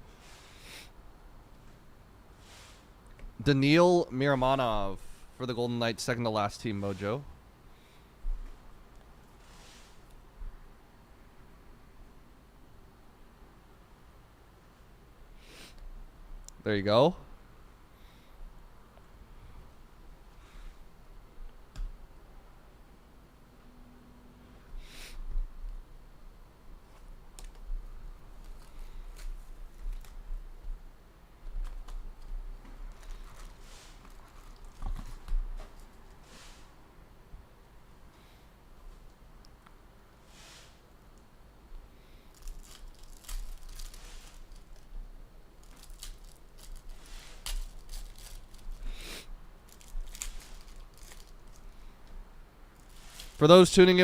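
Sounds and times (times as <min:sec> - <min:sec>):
steady low hum: 0:00.0 - 0:54.0
foil wrappers tearing and crinkling: 0:42.3 - 0:44.9, 0:45.6 - 0:49.1, 0:49.7 - 0:51.8, 0:52.8 - 0:53.5.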